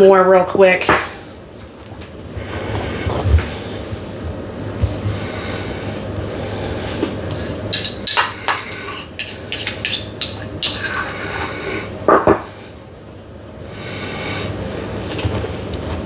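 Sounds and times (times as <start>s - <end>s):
metal utensil clinking on dish: 7.3s - 11.5s.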